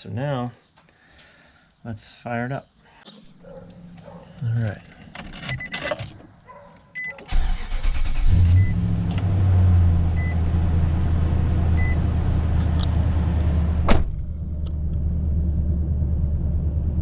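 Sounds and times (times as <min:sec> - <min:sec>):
car engine cranking and idling: 0:07.2 - 0:17.0.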